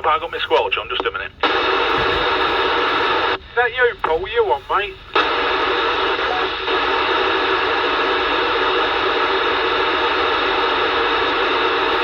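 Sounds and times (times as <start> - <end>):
radio static hiss: 0.0 - 12.0.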